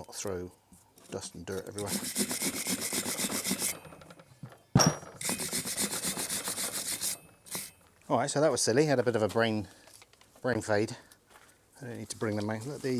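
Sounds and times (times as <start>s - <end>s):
rubbing strokes on steel shaft: 1.8s - 3.9s, 5.2s - 7.8s.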